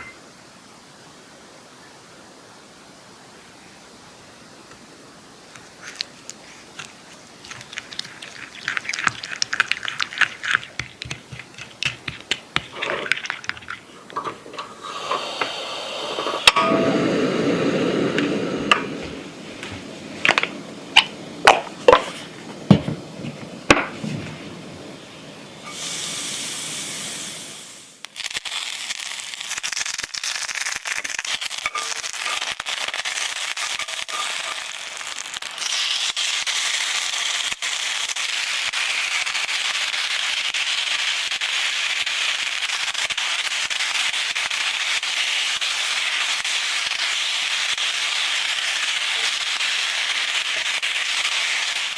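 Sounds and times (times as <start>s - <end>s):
food sizzling in pan: 0.0s - 0.8s, 3.7s - 51.9s
brief hiss: 14.1s - 22.4s, 23.9s - 36.2s.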